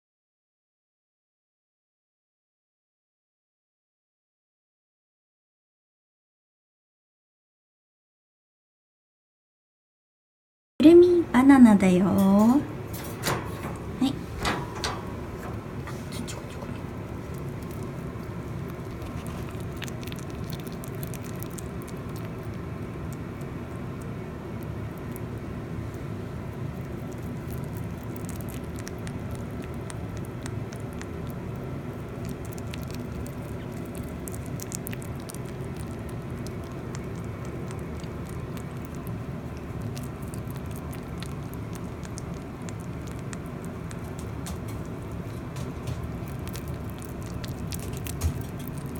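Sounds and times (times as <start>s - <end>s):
low background hum: 10.8s - 48.9s
rabbit chewing: 12.2s - 48.9s.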